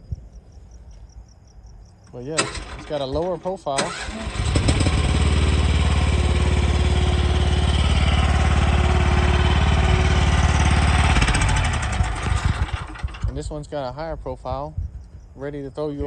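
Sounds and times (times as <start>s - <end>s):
small engine running: 2.4s - 13.4s.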